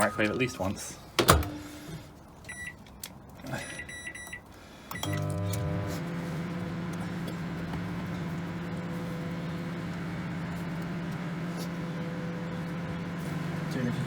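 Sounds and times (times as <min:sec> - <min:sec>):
microwave humming: 0:01.2 - 0:01.9, 0:04.9 - 0:14.0
microwave keypad beeping: 0:02.5 - 0:02.8, 0:03.6 - 0:04.4, 0:05.0 - 0:05.8.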